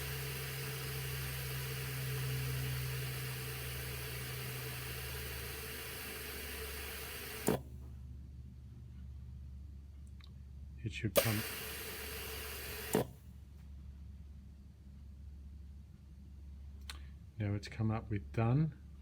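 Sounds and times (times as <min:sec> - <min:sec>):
air hissing out of a tyre: 0:00.0 - 0:07.6, 0:11.2 - 0:13.1
valve click: 0:00.0 - 0:07.7, 0:11.2 - 0:13.2.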